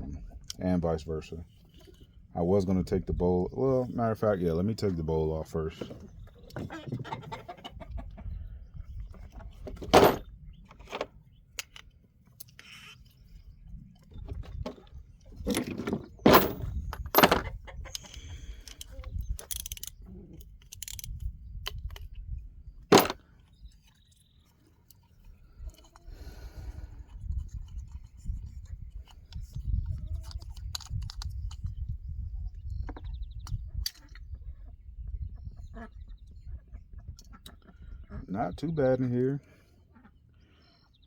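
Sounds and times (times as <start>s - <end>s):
metal tools clinking and scraping: 9.9s - 10.2s, 15.4s - 19.9s, 22.9s - 23.2s.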